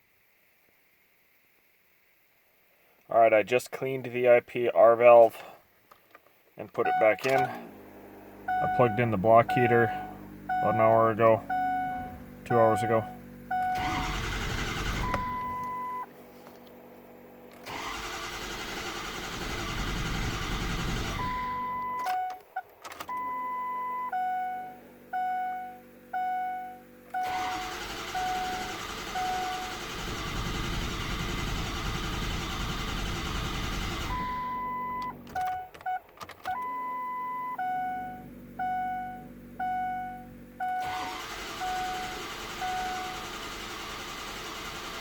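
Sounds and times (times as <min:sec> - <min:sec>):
dashboard chime beeping: 0:06.8 - 0:07.6, 0:08.5 - 0:14.0
starter cranking diesel engine: 0:06.9 - 0:15.9, 0:17.5 - 0:21.8, 0:27.0 - 0:35.5, 0:40.6 - 0:45.0.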